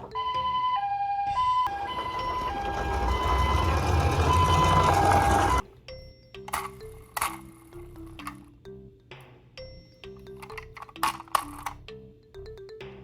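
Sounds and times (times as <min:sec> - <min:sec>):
ambulance two-tone siren: 0:00.0 - 0:05.6
low steady rumble: 0:01.7 - 0:05.6.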